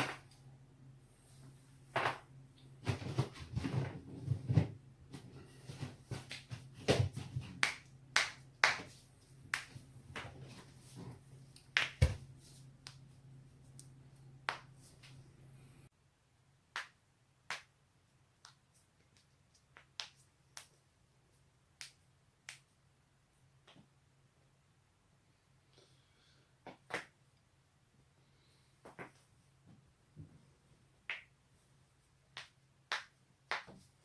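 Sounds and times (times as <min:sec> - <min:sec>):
steady low hum: 0:00.0 - 0:15.9.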